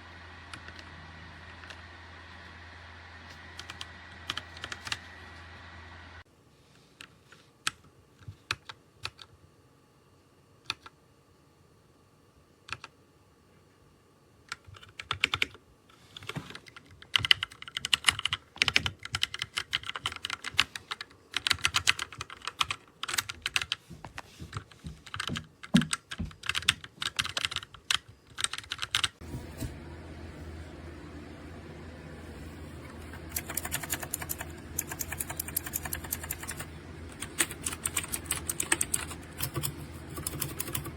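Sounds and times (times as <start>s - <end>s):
mechanical keyboard typing: 3.6s - 5.1s, 12.7s - 12.9s, 14.5s - 15.6s, 16.2s - 23.8s, 24.5s - 29.2s, 33.1s - 40.9s.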